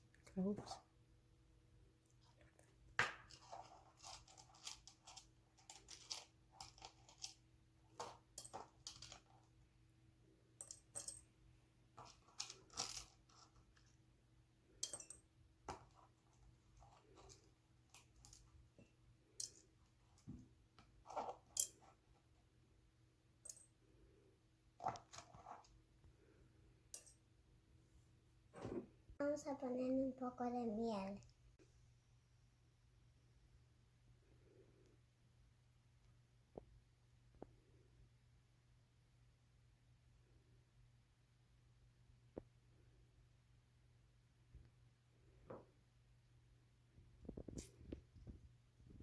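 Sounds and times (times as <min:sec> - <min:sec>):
utensils clinking and tapping: 0:14.8 - 0:15.2, 0:18.0 - 0:19.7, 0:26.9 - 0:27.2.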